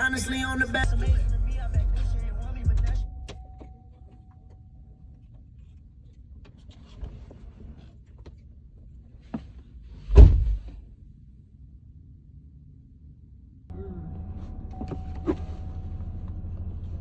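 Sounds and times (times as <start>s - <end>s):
low steady rumble: 0.0s - 17.0s
loud heavy thump: 10.1s - 10.7s.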